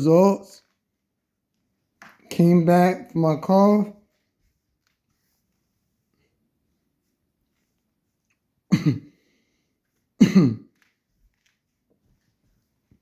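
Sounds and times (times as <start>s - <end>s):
man coughing: 8.7s - 9.2s, 10.2s - 10.7s.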